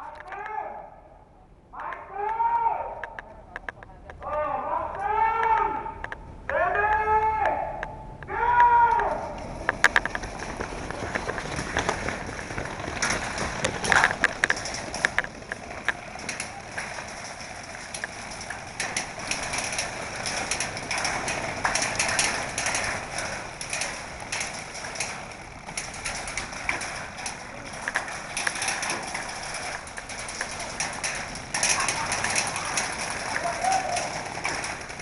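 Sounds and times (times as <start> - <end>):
footsteps: 8.6 - 35.0
rustling of gear: 9.0 - 35.0.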